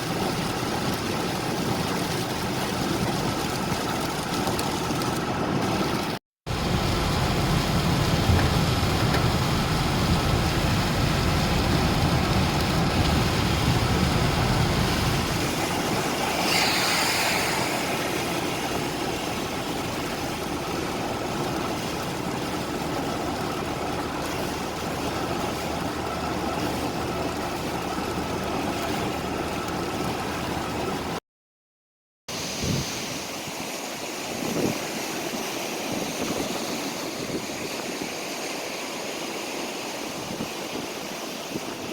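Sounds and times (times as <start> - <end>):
rain and running water: 0.0 - 31.2, 32.3 - 41.9
vehicle engine rumbling: 3.1 - 31.2
street traffic: 6.5 - 15.6.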